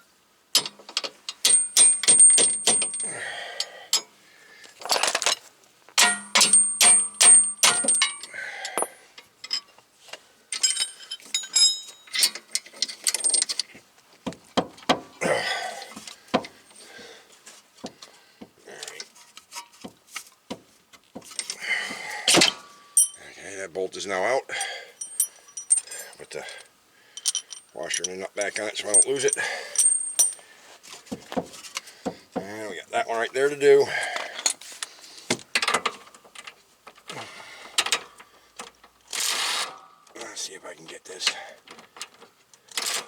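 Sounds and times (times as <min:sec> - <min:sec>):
metal tools clinking and scraping: 0:00.6 - 0:04.1, 0:04.8 - 0:09.8, 0:10.5 - 0:13.8, 0:15.8 - 0:17.0, 0:21.2 - 0:23.4, 0:24.5 - 0:31.8, 0:33.2 - 0:37.2, 0:39.1 - 0:43.0.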